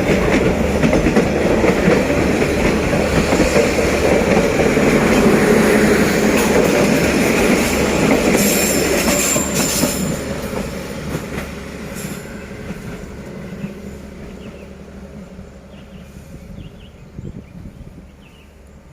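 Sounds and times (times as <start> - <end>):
train rumbling past: 0.0 - 18.9
train wheels squealing: 7.5 - 11.1, 11.8 - 14.7.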